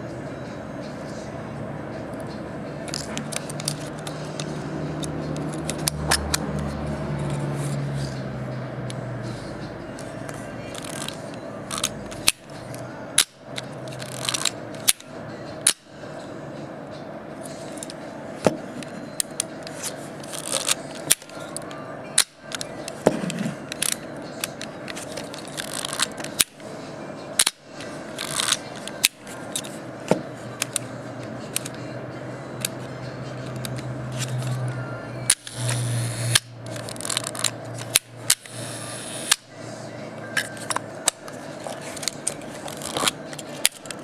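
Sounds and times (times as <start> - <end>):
film advance lever ratcheting: 2.2 - 9.1, 9.7 - 15.9, 18.8 - 26.7, 27.4 - 29.8, 30.5 - 32.0, 32.6 - 39.6, 40.3 - 44.0
camera shutter clicks: 10.8 - 12.4, 35.3 - 39.5.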